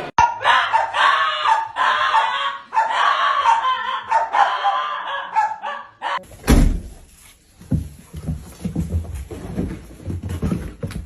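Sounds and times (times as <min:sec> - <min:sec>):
dog barking and yowling: 0:00.2 - 0:06.2
loud thud: 0:06.4 - 0:07.0.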